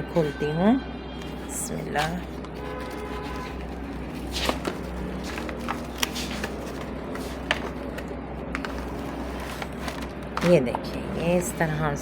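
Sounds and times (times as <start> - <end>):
packaging rustling: 1.2 - 11.6.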